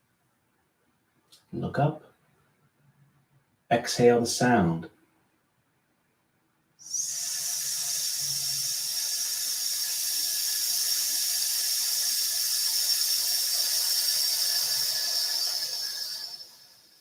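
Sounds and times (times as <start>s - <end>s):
person hissing through teeth: 6.8s - 17.0s.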